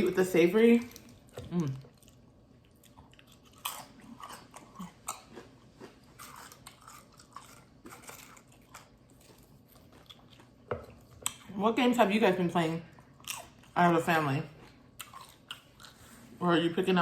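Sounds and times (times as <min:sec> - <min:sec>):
close-up chewing crunches: 0:00.8 - 0:11.5, 0:12.9 - 0:13.9, 0:14.6 - 0:16.2.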